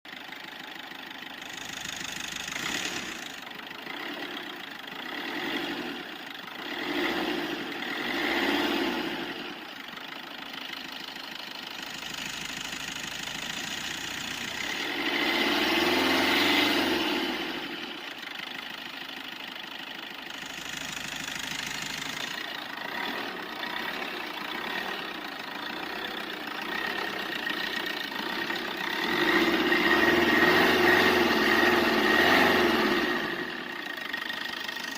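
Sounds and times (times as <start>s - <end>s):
car engine revving: 1.4s - 4.4s, 5.0s - 9.6s, 12.0s - 18.0s, 20.3s - 33.7s.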